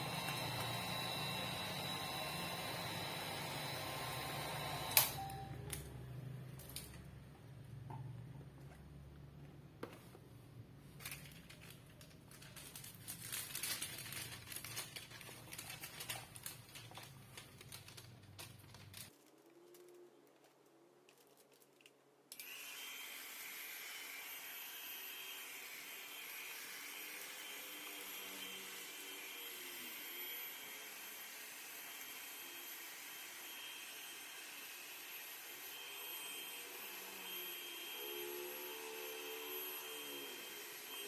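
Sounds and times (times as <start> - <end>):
hairdryer blowing: 0.0 - 5.5, 22.4 - 41.0.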